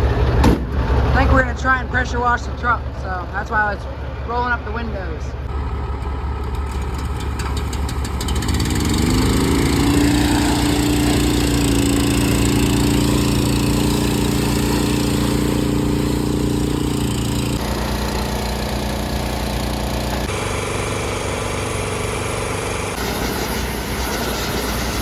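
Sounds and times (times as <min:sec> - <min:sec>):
pressure washer engine running: 0:05.5 - 0:25.0.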